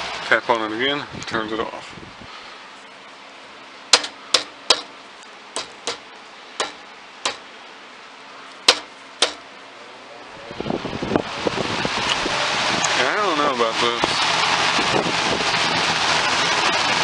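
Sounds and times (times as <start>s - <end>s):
sharp taps on thermostat: 3.9s - 4.9s, 5.6s - 6.0s, 6.6s - 7.4s, 8.7s - 9.4s.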